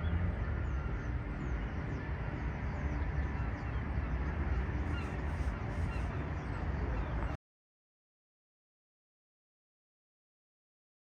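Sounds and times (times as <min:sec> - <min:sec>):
town ambience rumble: 0:00.0 - 0:07.4.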